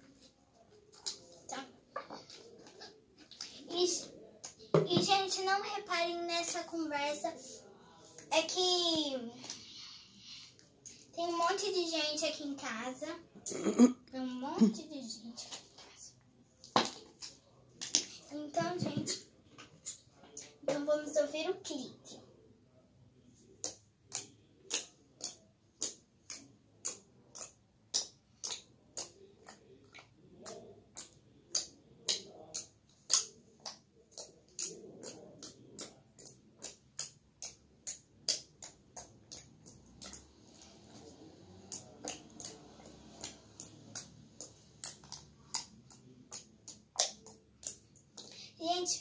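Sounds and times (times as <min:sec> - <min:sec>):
slime clicking and popping: 0:41.6 - 0:48.3.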